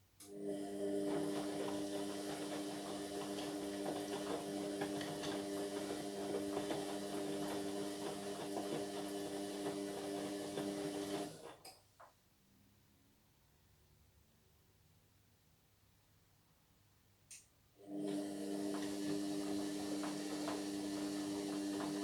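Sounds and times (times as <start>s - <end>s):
washing machine running: 0.3s - 11.6s, 17.8s - 22.0s.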